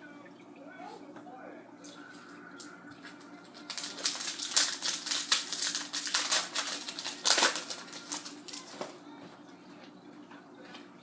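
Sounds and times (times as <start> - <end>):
card pack crinkling and rustling: 2.6 - 9.0.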